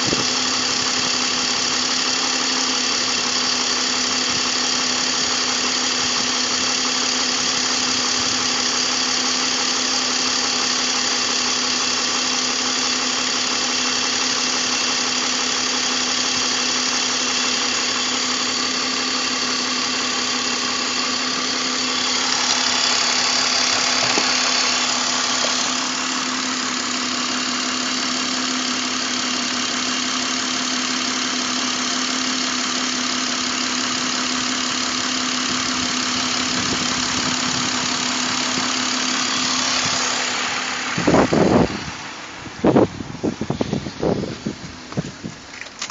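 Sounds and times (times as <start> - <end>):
car engine idling: 0.0 - 45.9.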